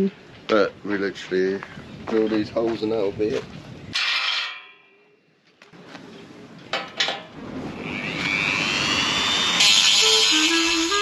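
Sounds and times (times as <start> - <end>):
power drill whining: 7.6 - 11.0
drill bit grinding metal: 7.7 - 11.0.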